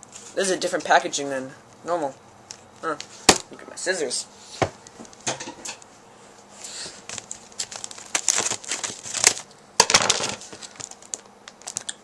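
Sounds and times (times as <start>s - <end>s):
plastic packaging crinkling: 7.0s - 12.0s.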